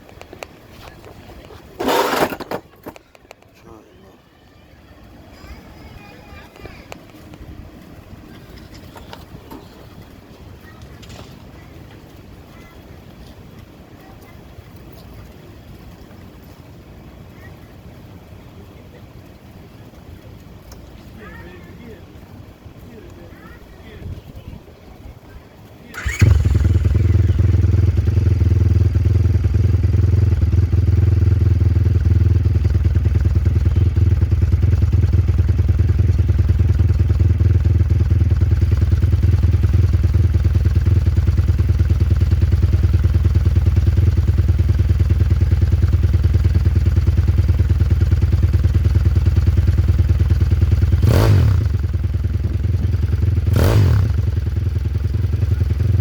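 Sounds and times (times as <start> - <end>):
minibike engine running: 1.4 - 3.0, 25.9 - 56.0
engine revving: 26.0 - 29.9, 50.4 - 52.0, 53.1 - 54.9.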